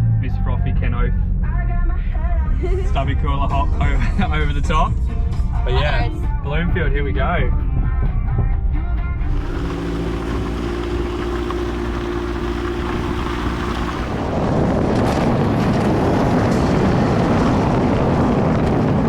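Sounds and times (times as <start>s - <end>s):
tyres rumbling on dirt track: 9.2s - 19.0s
vehicle engine hum: 9.2s - 19.0s.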